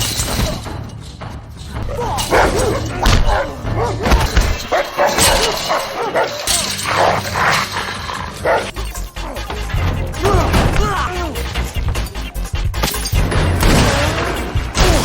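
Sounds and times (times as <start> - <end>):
music: 0.0 - 15.0
dog barking and yipping: 1.8 - 8.8.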